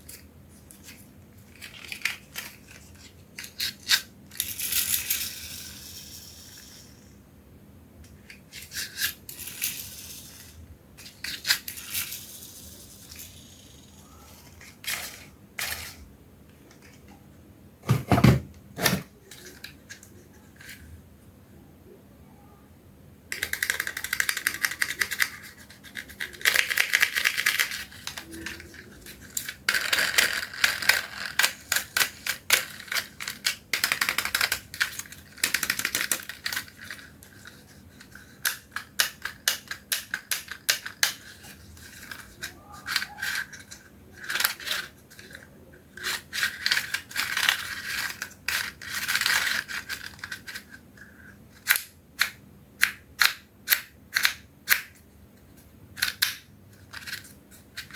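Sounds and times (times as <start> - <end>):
plastic toys clattering: 8.3 - 16.0, 23.3 - 55.0, 56.0 - 57.9.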